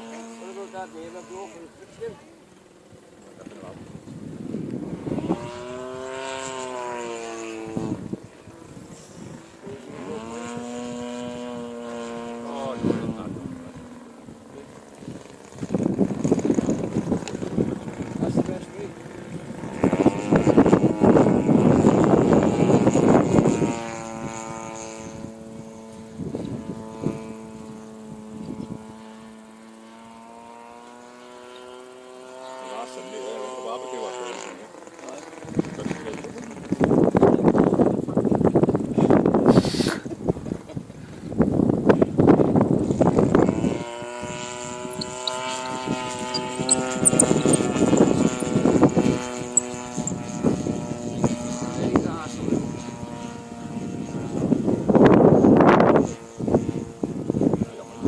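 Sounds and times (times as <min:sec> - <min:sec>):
model plane motor droning: 0:00.0 - 0:58.0
wind noise on microphone: 0:03.7 - 0:29.4, 0:35.4 - 0:58.0.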